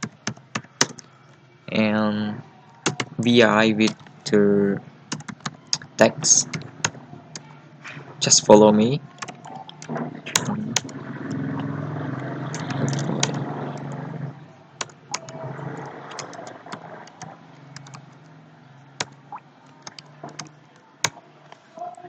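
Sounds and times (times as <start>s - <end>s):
computer keyboard keystrokes: 0.0s - 1.1s, 2.8s - 3.2s, 5.1s - 6.7s, 12.5s - 13.4s, 16.1s - 16.5s, 17.1s - 18.0s, 19.8s - 21.2s.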